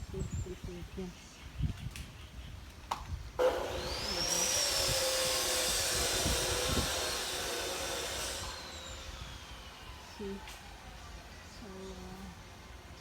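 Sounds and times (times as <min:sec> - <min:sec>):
power tool whining: 0:03.4 - 0:13.0.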